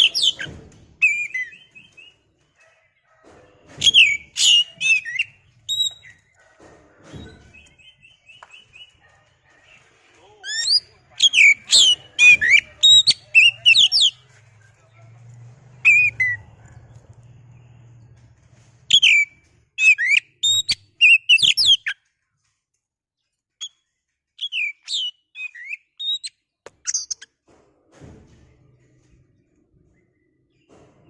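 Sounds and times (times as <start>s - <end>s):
bird singing whistles and chirps: 24.4s - 26.3s.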